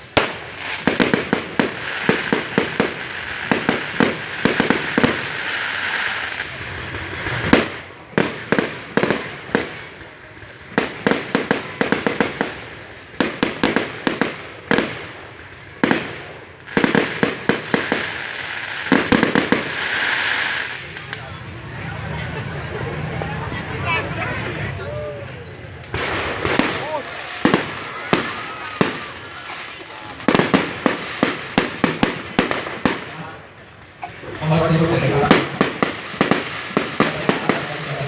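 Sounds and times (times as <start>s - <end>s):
crackling hiss of burning shells: 0.0s - 21.3s, 25.7s - 34.0s, 34.7s - 38.0s
fireworks bangs and pops: 0.0s - 21.4s, 25.8s - 38.0s.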